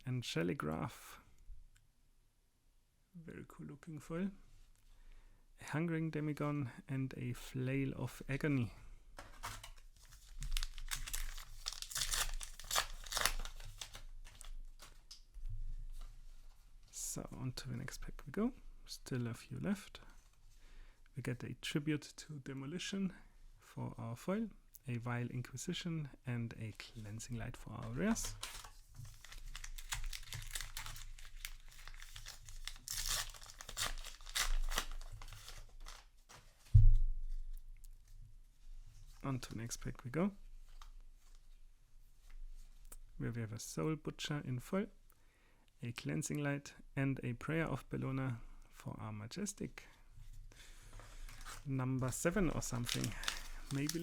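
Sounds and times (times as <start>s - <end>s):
foil wrapper crinkling and tearing: 9.4s - 15.2s, 28.0s - 36.1s, 51.1s - 54.0s
dull thump: 36.7s - 37.3s.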